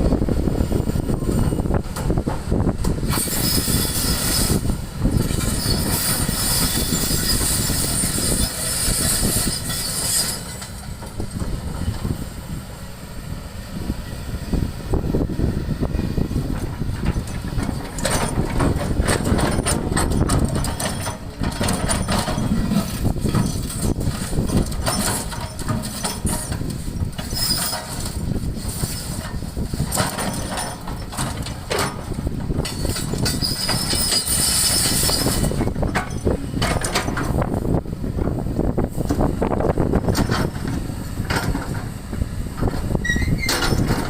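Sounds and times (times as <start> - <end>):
excavator diesel engine: 0.0 - 44.0
high-pitched squeal: 3.1 - 10.7.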